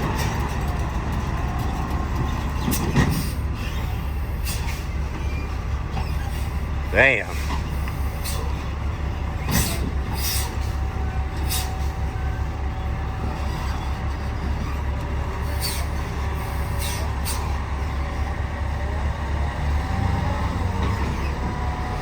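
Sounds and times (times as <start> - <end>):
truck engine rumble: 0.0 - 22.0
air brake hissing bursts: 9.6 - 10.8, 11.4 - 11.9.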